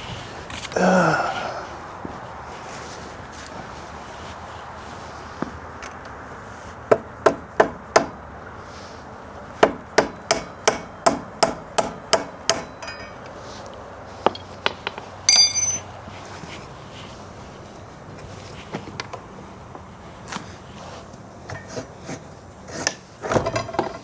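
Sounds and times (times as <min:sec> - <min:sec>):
hammer striking metal: 0:10.0 - 0:13.3, 0:15.3 - 0:15.9
ringing metallic clang: 0:12.6 - 0:13.3, 0:15.3 - 0:16.0.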